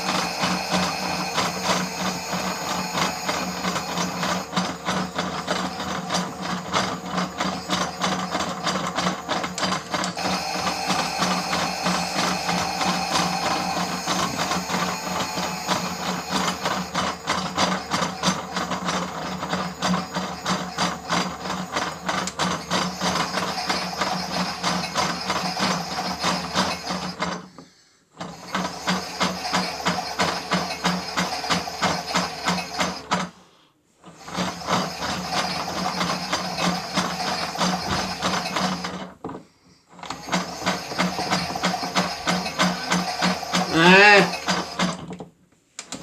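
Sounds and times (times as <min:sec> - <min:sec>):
small motor humming: 0:00.0 - 0:08.3, 0:09.5 - 0:18.6, 0:22.4 - 0:27.2, 0:40.1 - 0:44.8
toy washing machine running: 0:00.0 - 0:46.0
gears clicking and rattling: 0:40.1 - 0:45.2.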